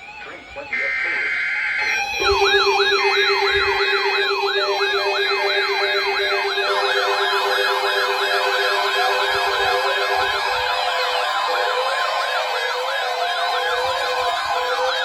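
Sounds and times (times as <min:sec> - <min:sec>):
swooping siren alert tone: 0:00.0 - 0:15.0.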